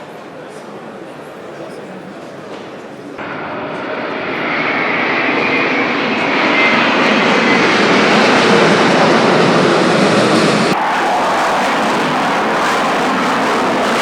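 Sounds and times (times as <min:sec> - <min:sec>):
aircraft engines rushing: 0:03.2 - 0:14.0.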